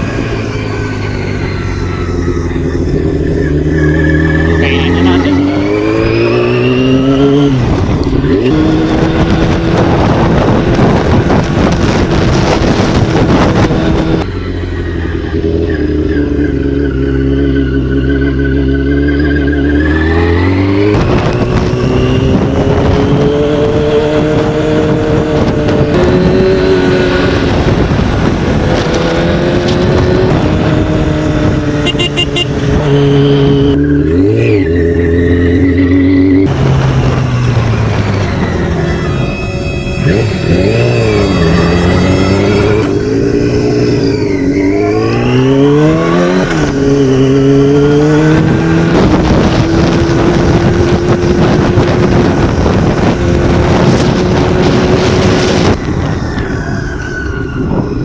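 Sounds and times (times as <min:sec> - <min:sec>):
motorcycle engine revving: 0:00.0 - 0:57.3
wind noise on microphone: 0:00.0 - 0:58.0.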